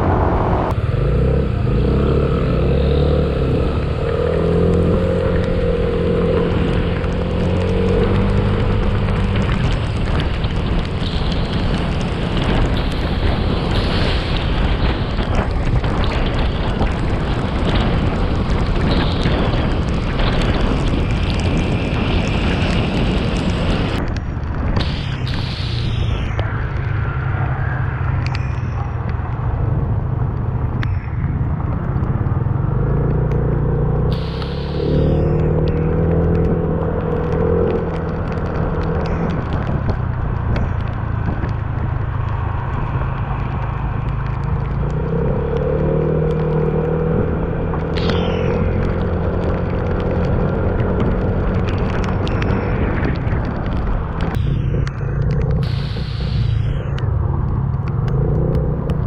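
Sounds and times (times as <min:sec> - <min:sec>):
high falling whine: 0:00.0 - 0:08.6, 0:09.4 - 0:39.9, 0:46.6 - 0:59.0
heavy low rumble: 0:00.0 - 0:59.0
road noise: 0:00.0 - 0:59.0.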